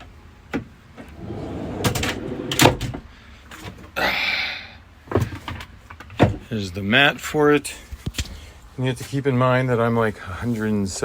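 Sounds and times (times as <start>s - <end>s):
drawer sliding rumble: 1.0s - 3.0s.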